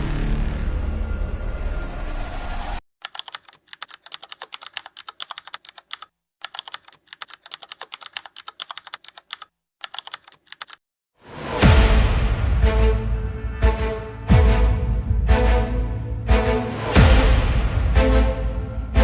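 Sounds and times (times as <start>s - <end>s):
computer keyboard typing: 3.0s - 10.8s
music: 11.3s - 19.0s.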